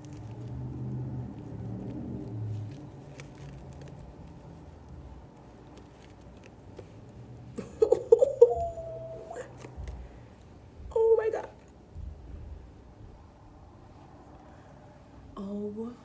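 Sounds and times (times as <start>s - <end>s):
packaging clicks and rustles: 1.4s - 4.6s
wavering voice-like call: 8.2s - 9.5s.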